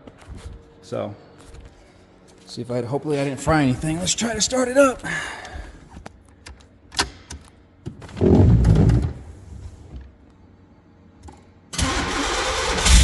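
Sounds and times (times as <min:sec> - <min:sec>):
car engine starting: 0:11.7 - 0:13.0.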